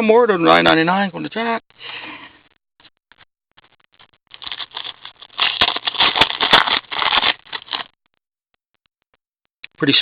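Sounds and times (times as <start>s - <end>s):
card packaging crinkling: 4.3s - 7.9s.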